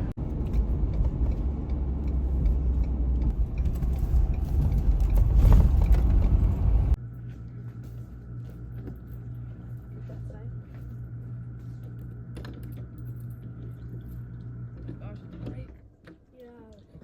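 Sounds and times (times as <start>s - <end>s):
vehicle road and engine rumble: 0.0s - 17.0s.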